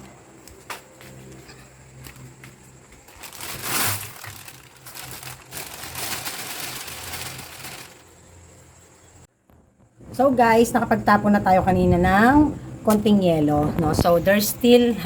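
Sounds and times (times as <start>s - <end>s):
plastic crinkling and rustling: 3.0s - 8.1s.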